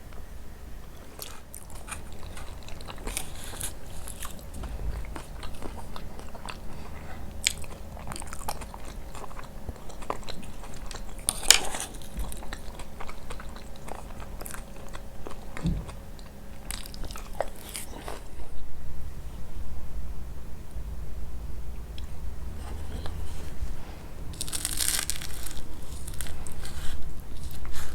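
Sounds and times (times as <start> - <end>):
chewing crunchy pastry: 0.0 - 18.7, 22.0 - 27.9
soft thud: 15.6 - 15.9.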